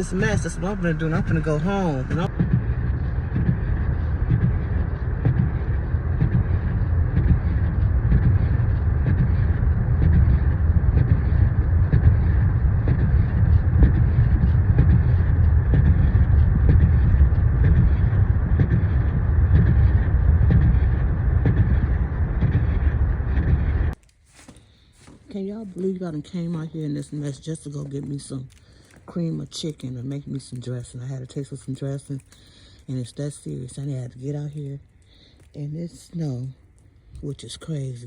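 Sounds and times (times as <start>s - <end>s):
car engine and tyre noise: 0.0s - 24.0s.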